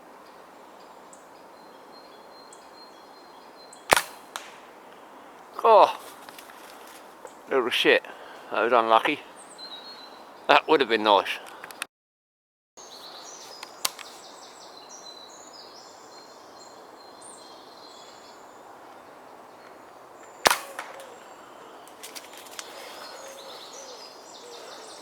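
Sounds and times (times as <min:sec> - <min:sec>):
birds singing: 0:00.2 - 0:11.7, 0:12.8 - 0:25.0
air rifle firing: 0:03.9 - 0:04.8, 0:20.4 - 0:21.4.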